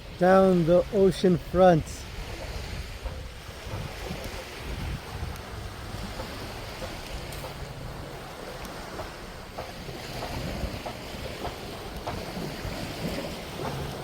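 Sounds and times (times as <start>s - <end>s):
sea waves washing onto beach: 0.0s - 14.0s
wind buffeting microphone: 0.0s - 14.0s.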